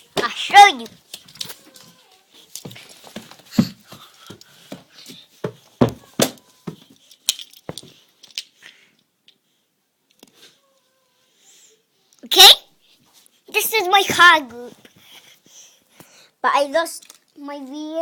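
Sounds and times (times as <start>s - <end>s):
toy cars clicking and knocking: 0.8s - 3.1s, 6.3s - 8.7s.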